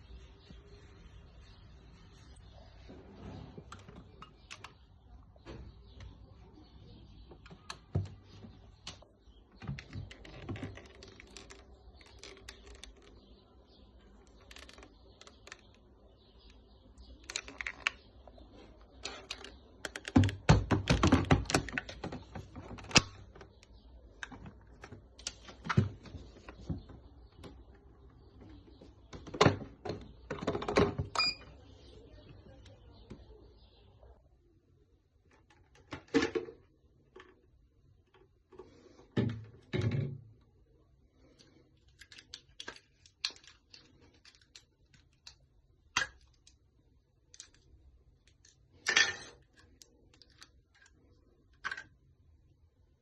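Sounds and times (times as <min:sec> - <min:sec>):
hard objects clicking and knocking: 0:17.2 - 0:27.6.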